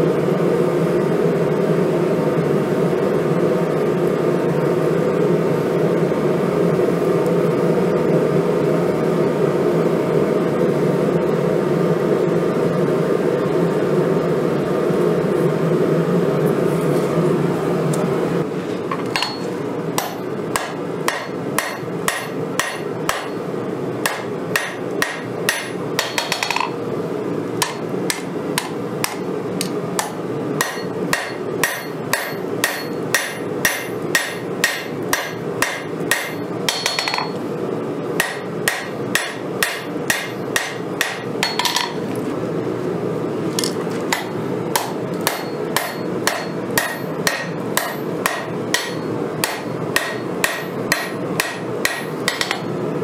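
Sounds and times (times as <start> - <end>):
hammer ringing on anvil: 19.2 - 23.4, 24.1 - 26.8, 30.0 - 37.4, 38.2 - 42.0, 44.1 - 52.7.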